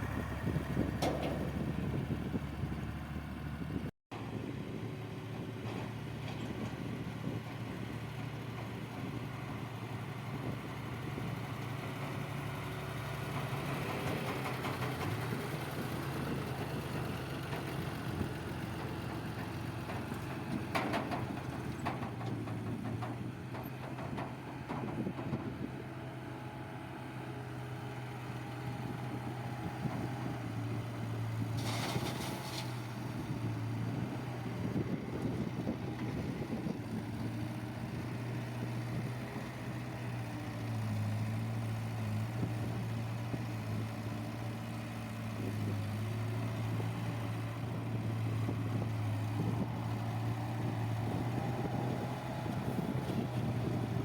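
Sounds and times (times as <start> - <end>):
heavy diesel engine running: 32.9 - 54.0.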